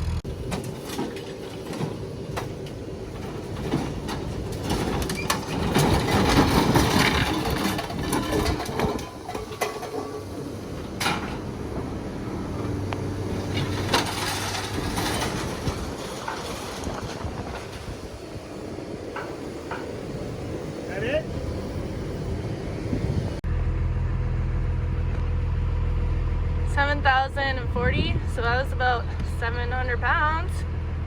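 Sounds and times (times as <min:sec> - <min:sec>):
scrap metal clattering: 0:00.2 - 0:20.0
heavy rattling: 0:00.2 - 0:22.2.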